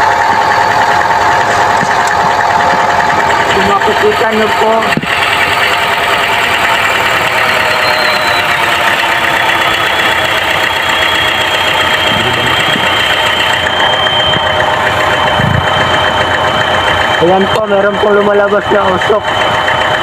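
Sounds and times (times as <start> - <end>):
car engine idling with misfire: 0.0 - 20.0
faint high whine: 7.4 - 19.4.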